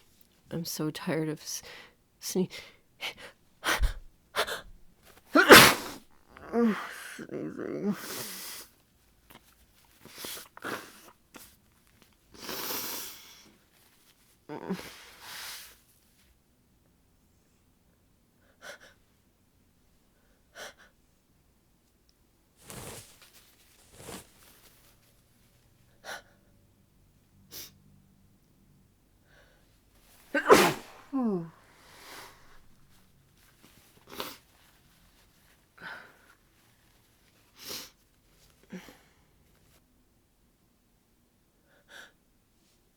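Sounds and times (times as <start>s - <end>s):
muffled sneeze into tissue: 3.6s - 16.3s, 22.6s - 26.4s, 29.7s - 39.8s
person sniffling: 5.4s - 8.7s, 30.3s - 32.8s.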